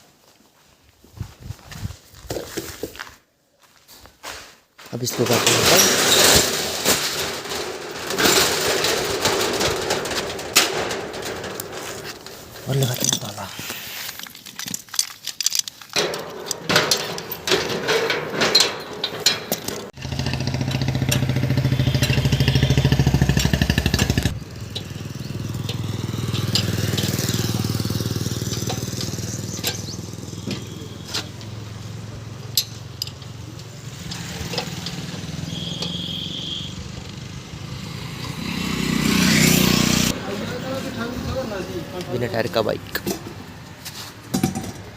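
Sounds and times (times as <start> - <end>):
sharp clicks and knocks: 5.1 - 13.4, 14.0 - 22.4, 23.3 - 36.0, 44.3 - 44.9
vehicle engine running: 19.9 - 42.1.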